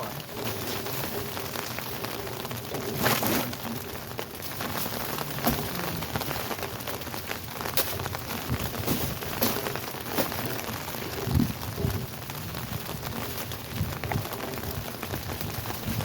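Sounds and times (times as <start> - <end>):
heavy rain pouring: 0.0 - 16.0.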